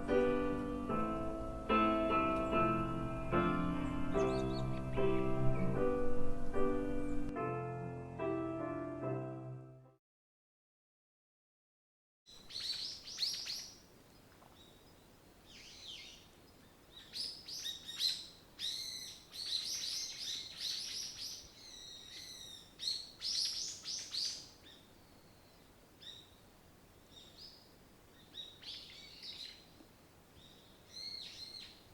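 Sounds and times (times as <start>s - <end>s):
songbirds chirping and trilling: 2.0s - 5.9s, 12.3s - 31.9s.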